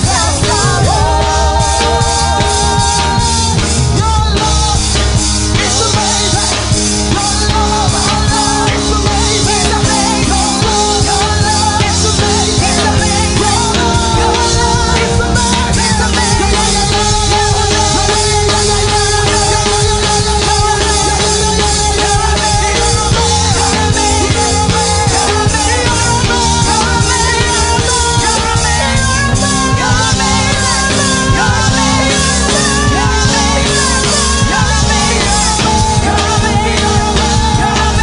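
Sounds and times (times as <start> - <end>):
band playing a fast driving beat: 0.0 - 38.0
voices singing: 0.0 - 38.0.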